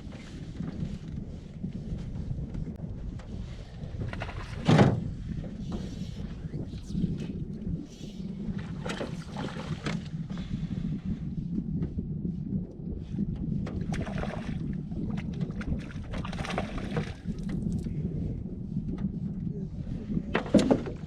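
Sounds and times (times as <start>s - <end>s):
wind rumble on microphone: 0.0s - 21.0s
water slapping against boat hull: 8.5s - 10.4s, 13.6s - 17.9s, 20.3s - 21.0s.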